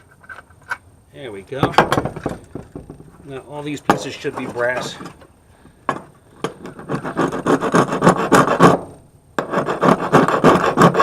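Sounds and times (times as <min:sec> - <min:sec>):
rasping scraping of metal: 0:06.3 - 0:11.0.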